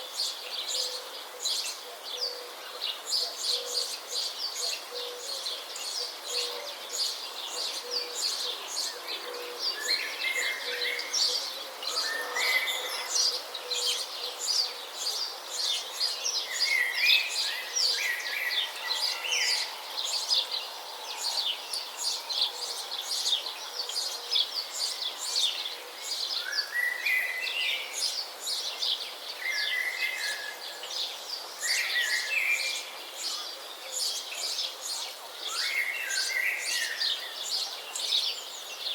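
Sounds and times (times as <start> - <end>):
birds chirping in chorus: 0.0 - 38.9.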